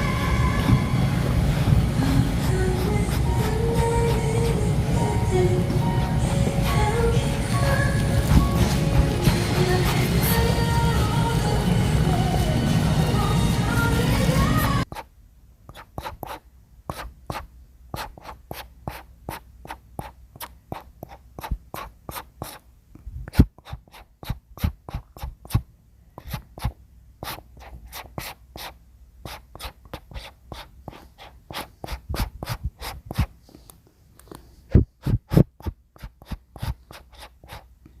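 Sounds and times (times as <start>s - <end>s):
brush strokes scraping wood: 5.8s - 10.4s, 35.0s - 37.7s.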